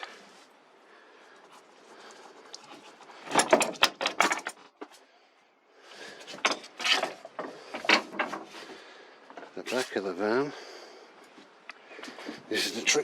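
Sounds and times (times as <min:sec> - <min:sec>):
hard objects clattering together: 0:03.1 - 0:05.0, 0:06.1 - 0:09.9.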